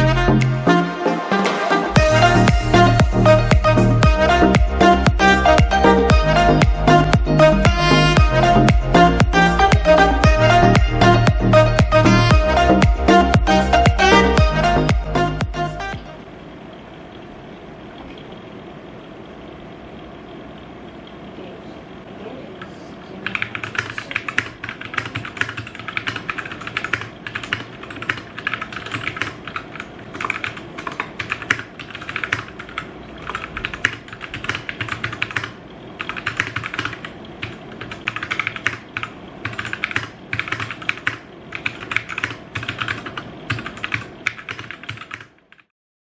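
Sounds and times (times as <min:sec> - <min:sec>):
mechanical keyboard typing: 0:23.2 - 0:45.7.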